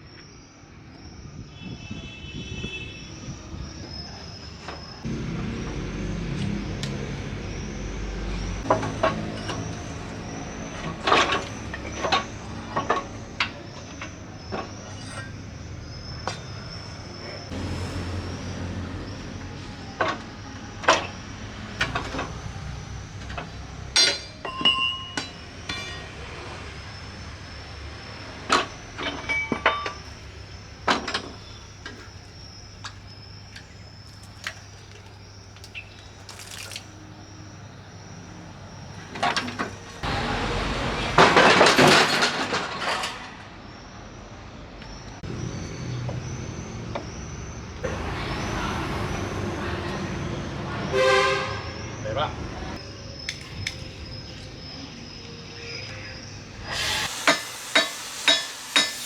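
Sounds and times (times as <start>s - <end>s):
rushing hiss: 56.6s - 59.0s.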